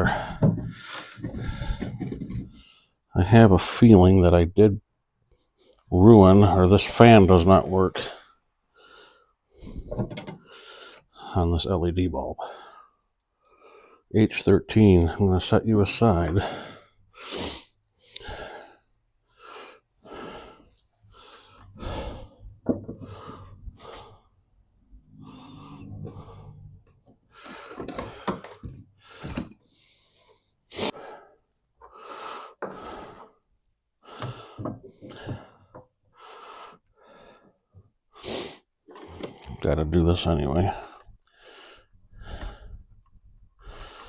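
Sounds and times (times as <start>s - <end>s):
person breathing: 0.0s - 3.0s, 8.0s - 11.3s, 12.4s - 14.1s, 16.3s - 33.4s, 34.0s - 39.5s, 40.7s - 44.0s
parts rustling: 25.4s - 29.7s.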